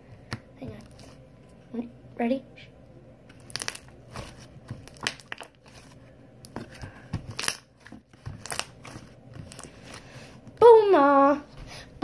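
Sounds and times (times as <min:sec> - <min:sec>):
slime squished by hand: 0:03.3 - 0:10.0.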